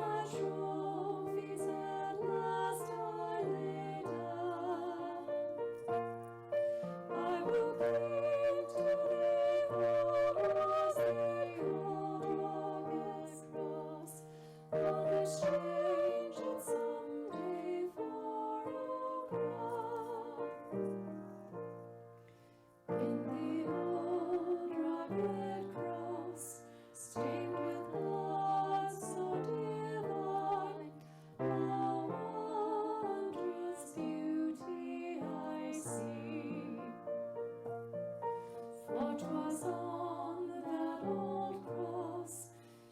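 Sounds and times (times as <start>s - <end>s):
slow gentle music: 0.0s - 42.9s.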